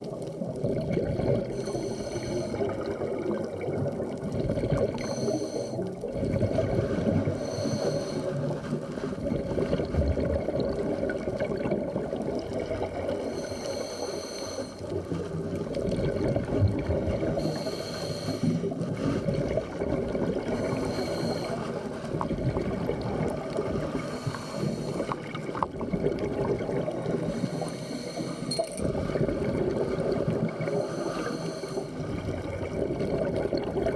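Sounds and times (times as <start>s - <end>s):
bubbles: 0.0s - 33.9s
muffled underwater noise: 0.0s - 33.9s
scuba regulator breathing hiss: 1.5s - 2.7s, 5.0s - 5.9s, 7.2s - 8.5s, 13.2s - 15.0s, 17.3s - 18.8s, 20.5s - 21.8s, 24.0s - 25.2s, 27.1s - 28.5s, 30.6s - 32.1s.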